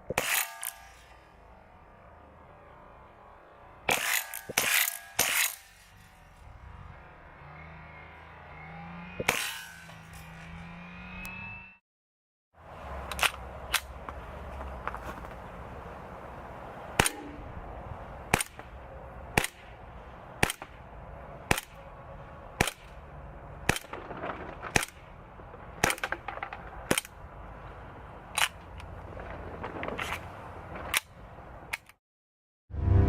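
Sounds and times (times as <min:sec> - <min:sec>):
airsoft pistol shots: 0:17.0 - 0:17.4.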